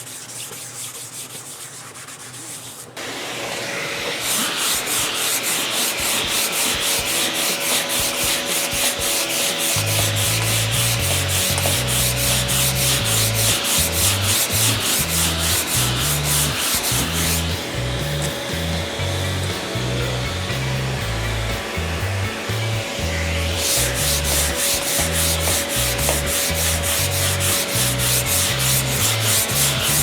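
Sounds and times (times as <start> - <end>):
sandpaper sanding strokes: 0.0 - 30.0
low bass tones: 9.8 - 30.0.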